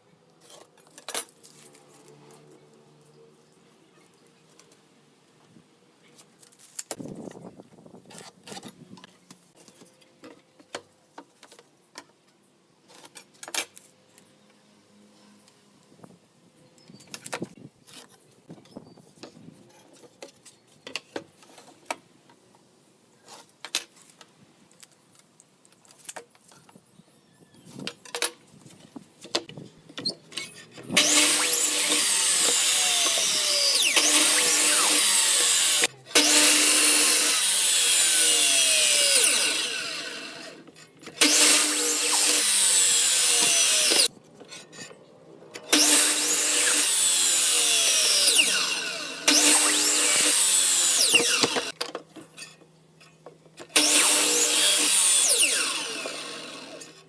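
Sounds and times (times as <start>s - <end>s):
power tool working wood: 31.0s - 40.6s, 41.2s - 44.1s, 45.7s - 51.8s, 53.7s - 57.0s.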